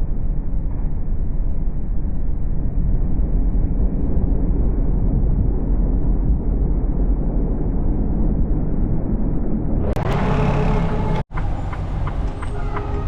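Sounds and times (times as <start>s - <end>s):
road noise inside cab: 9.8s - 13.0s
truck engine rumble: 9.8s - 13.0s.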